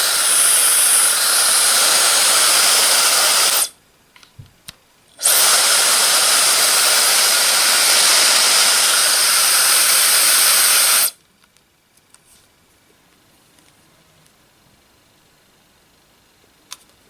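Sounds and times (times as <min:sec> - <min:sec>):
hair dryer blowing air: 0:00.0 - 0:03.7, 0:05.2 - 0:11.2.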